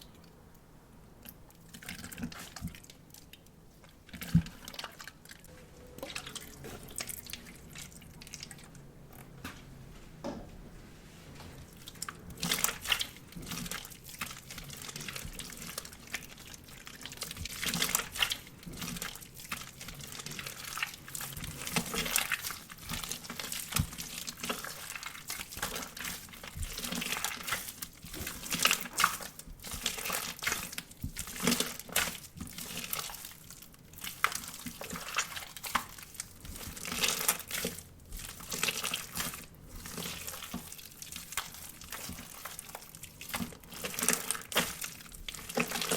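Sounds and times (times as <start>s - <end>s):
water slime squished by hand: 11.7s - 45.9s.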